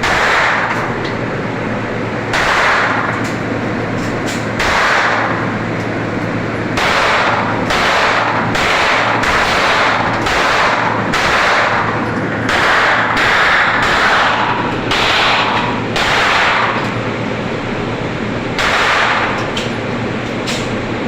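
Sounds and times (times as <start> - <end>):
gunshots: 0.0 - 0.9, 2.3 - 3.1, 4.6 - 5.4, 6.8 - 11.9, 12.5 - 16.8, 18.6 - 19.4
steady low hum: 0.0 - 21.0.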